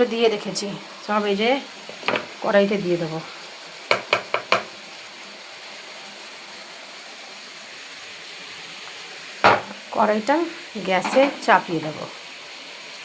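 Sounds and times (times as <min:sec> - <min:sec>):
utensil knocking on cookware: 0:01.9 - 0:02.3, 0:03.9 - 0:04.8, 0:09.4 - 0:09.8, 0:11.0 - 0:11.7.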